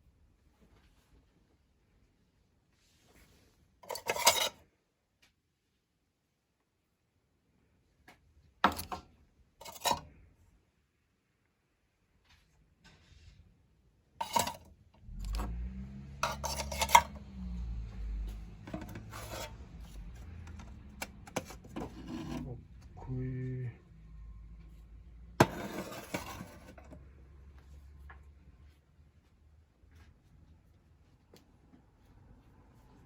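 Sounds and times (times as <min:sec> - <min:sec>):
objects handled and scraping: 0:02.8 - 0:04.6, 0:08.6 - 0:10.2, 0:14.2 - 0:15.6, 0:16.2 - 0:17.3, 0:18.2 - 0:23.0, 0:25.4 - 0:28.3
metal cookware clinking: 0:03.8 - 0:04.6, 0:09.6 - 0:10.0, 0:14.2 - 0:14.7, 0:16.2 - 0:17.2.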